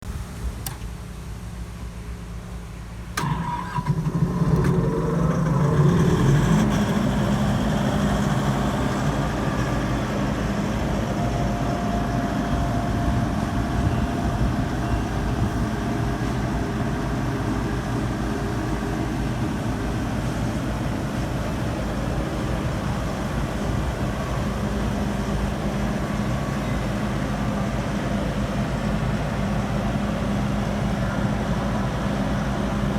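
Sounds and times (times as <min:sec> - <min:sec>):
air compressor diesel engine: 0:00.5 - 0:32.9
starter click: 0:00.6 - 0:00.9.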